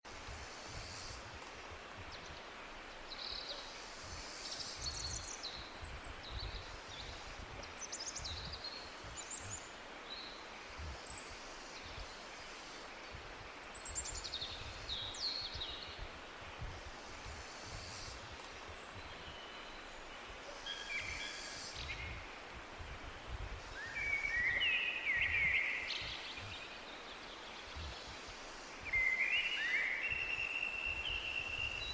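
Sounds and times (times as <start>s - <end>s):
tropical birds calling: 16.7s - 22.4s, 23.1s - 31.9s.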